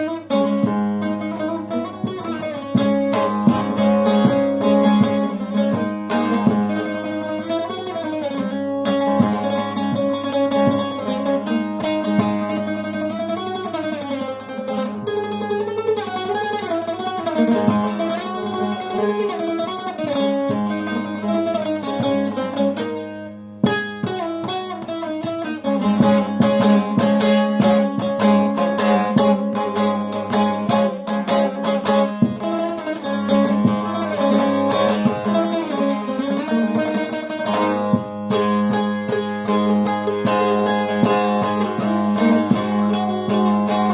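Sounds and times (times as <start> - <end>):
plucked long-necked lute melody: 0.0 - 43.9.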